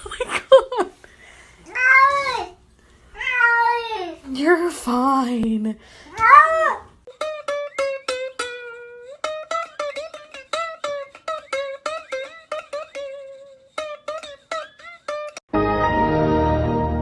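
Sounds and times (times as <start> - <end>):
picked string instrument notes: 7.1 - 17.0.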